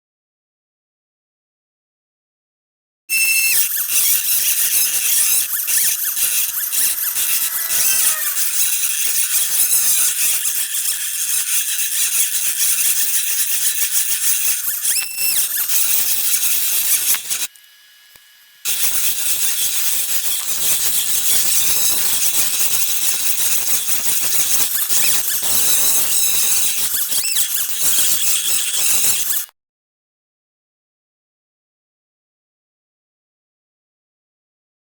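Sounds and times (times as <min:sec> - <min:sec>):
spindle motor high-pitched whine: 0:03.1 - 0:29.5.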